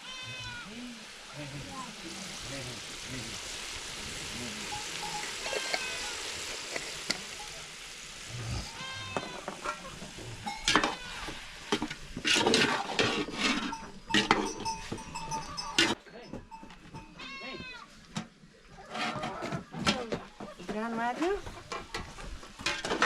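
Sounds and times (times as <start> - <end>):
meat sizzling in a pot: 0.0 - 16.0
metal spoon scraping and clanking: 9.2 - 16.0, 22.6 - 23.0.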